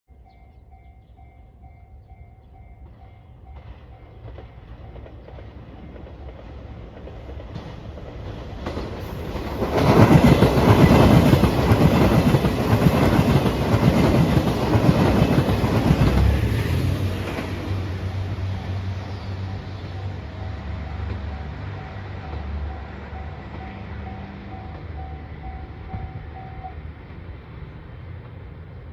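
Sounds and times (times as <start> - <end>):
diesel train passing: 0.1 - 28.9
wheels clattering over rails: 5.0 - 18.6.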